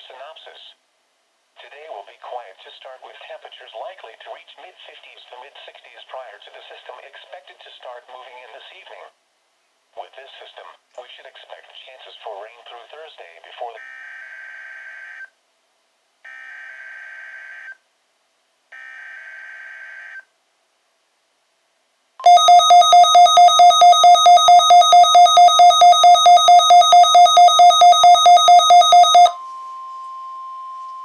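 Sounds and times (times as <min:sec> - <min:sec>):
steady warning alarm tone: 0:22.2 - 0:31.0.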